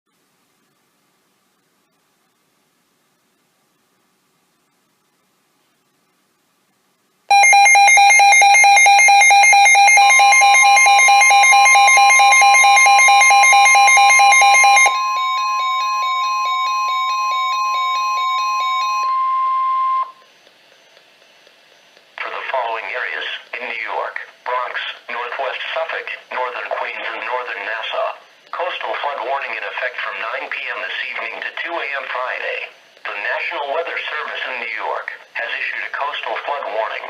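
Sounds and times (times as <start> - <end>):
faint hiss: 0.1 - 7.3
rapid electronic alarm beeping: 7.3 - 20.1
steady warning alarm tone: 7.3 - 20.2.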